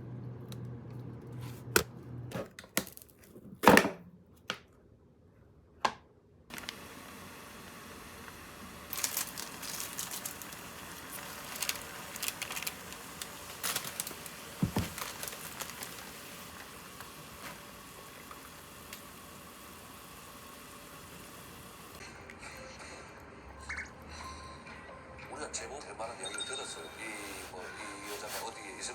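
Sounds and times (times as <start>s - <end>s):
handling crinkling and clicks: 6.5s - 6.9s, 8.9s - 17.6s.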